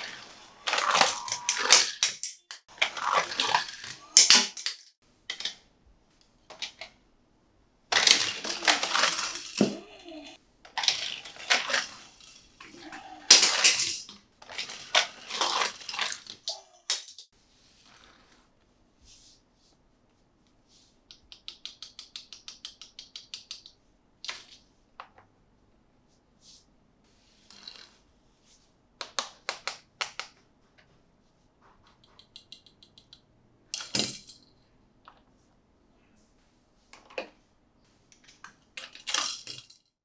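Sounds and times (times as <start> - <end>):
plastic and cardboard crackling: 0.0 - 5.0, 7.9 - 10.0, 10.7 - 17.3
rapid small clicks: 21.0 - 24.6, 31.9 - 33.3.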